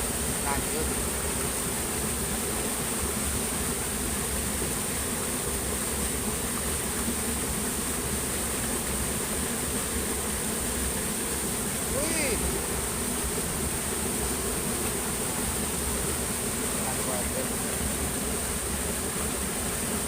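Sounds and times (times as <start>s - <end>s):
background hiss: 0.0s - 20.0s
high-pitched insect chorus: 10.9s - 19.0s.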